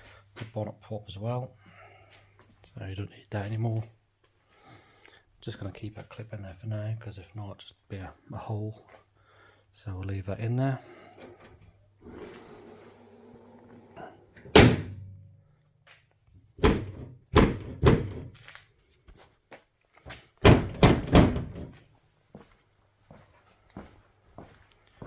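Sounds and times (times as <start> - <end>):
car bonnet slamming: 14.5 - 15.1.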